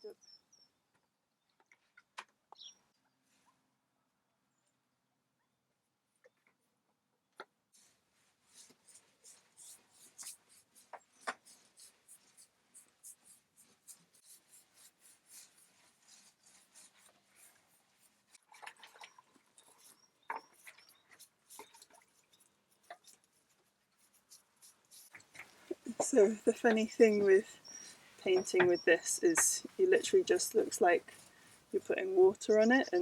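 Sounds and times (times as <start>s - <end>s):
paintbrush strokes: 7.7s - 33.0s.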